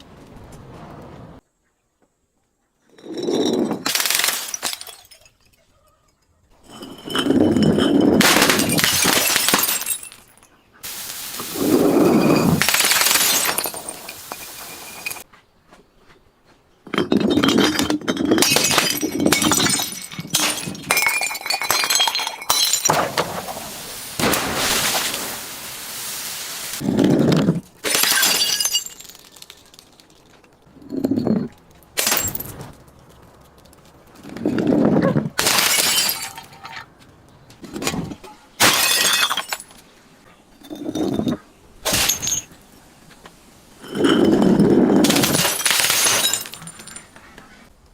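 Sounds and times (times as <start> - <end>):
glass bottles breaking: 3.1 - 5.7, 6.6 - 15.2, 16.9 - 26.9, 27.8 - 32.7, 35.4 - 36.7, 38.6 - 39.8, 40.6 - 42.6, 43.8 - 47.1.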